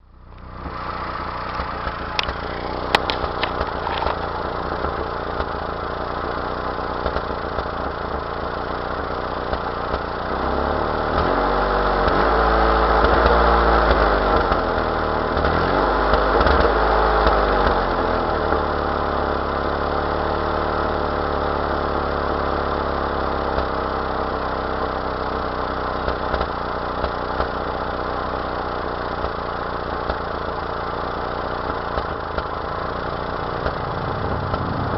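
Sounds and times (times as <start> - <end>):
misfiring engine idling and revving: 0.0 - 34.9.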